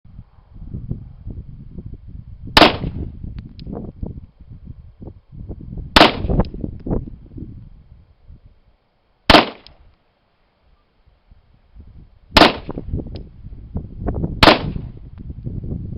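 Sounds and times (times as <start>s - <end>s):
pistol shots: 2.6s - 3.0s, 6.0s - 6.4s, 9.3s - 9.7s, 12.4s - 12.8s, 14.4s - 14.9s.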